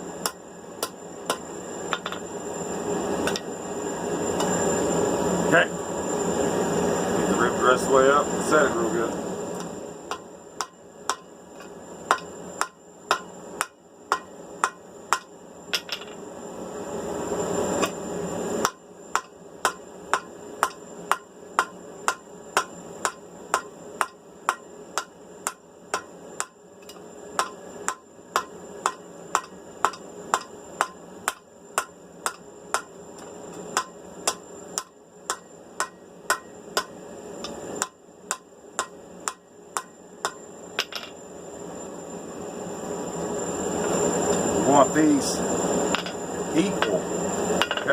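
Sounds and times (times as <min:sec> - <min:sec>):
hammer striking steel on anvil: 0:10.1 - 0:11.3, 0:12.1 - 0:16.1, 0:18.6 - 0:41.1, 0:45.9 - 0:47.0.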